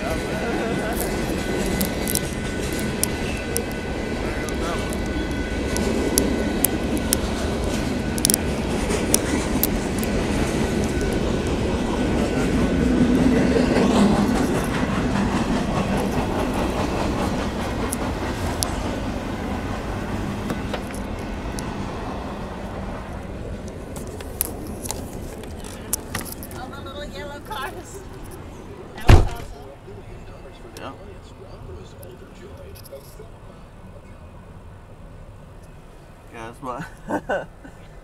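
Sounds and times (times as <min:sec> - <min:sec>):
freight train wheels clattering: 0:00.0 - 0:22.2
sharp clicks of wheels: 0:04.4 - 0:11.5.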